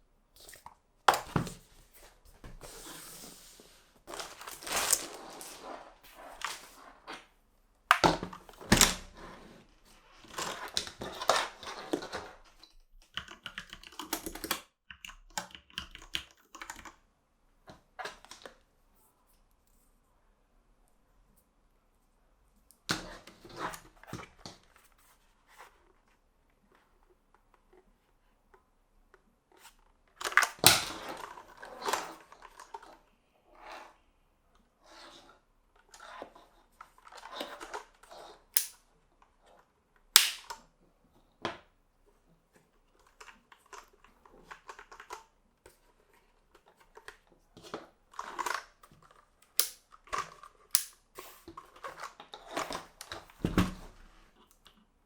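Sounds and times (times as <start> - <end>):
packaging rustling: 1.2 - 7.1.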